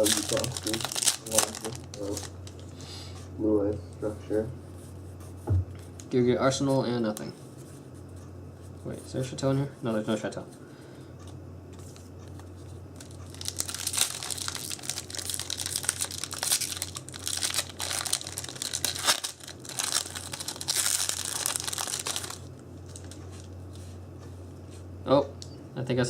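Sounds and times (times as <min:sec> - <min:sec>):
foil wrapper crinkling and tearing: 0:00.0 - 0:02.7, 0:13.0 - 0:23.2.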